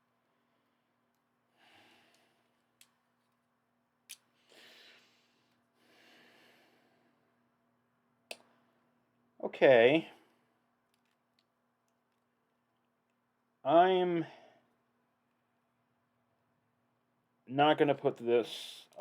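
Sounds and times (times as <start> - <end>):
faint breaths: 1.5 - 2.7, 4.4 - 7.4.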